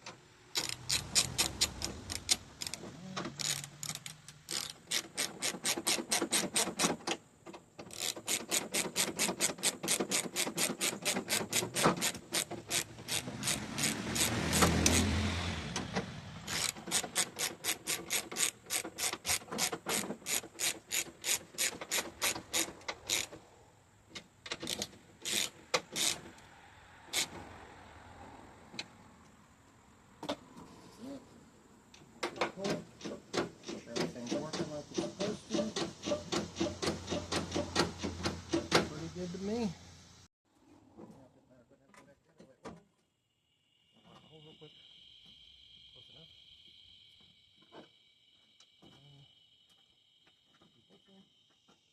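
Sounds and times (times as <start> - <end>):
hand ratchet clicking: 0.5 - 2.8, 3.4 - 7.2, 7.8 - 15.1, 16.5 - 23.4, 24.5 - 26.3.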